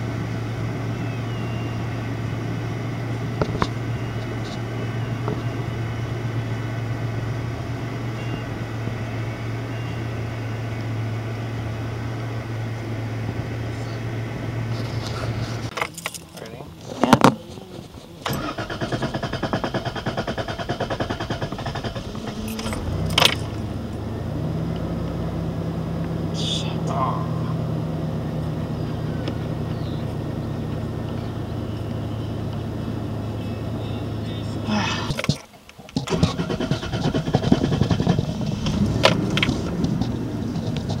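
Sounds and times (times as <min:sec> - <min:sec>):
engine idling: 0:00.0 - 0:41.0
starter cranking engine: 0:13.3 - 0:24.1, 0:33.8 - 0:41.0.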